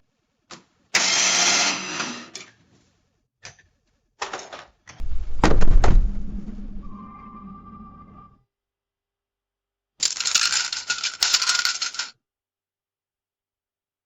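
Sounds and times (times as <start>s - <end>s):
heavy clunk with low rumble: 5.1s - 6.8s
cash register rattle: 10.0s - 12.1s.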